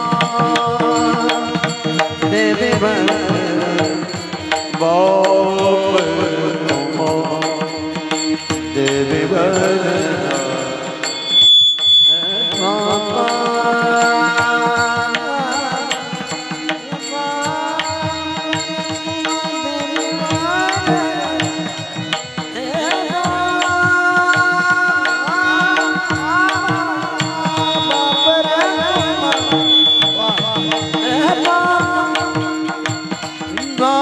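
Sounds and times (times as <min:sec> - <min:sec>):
man singing devotional song: 0:00.0 - 0:34.0
tabla: 0:00.0 - 0:34.0
high steady tone: 0:09.7 - 0:24.0, 0:24.6 - 0:34.0.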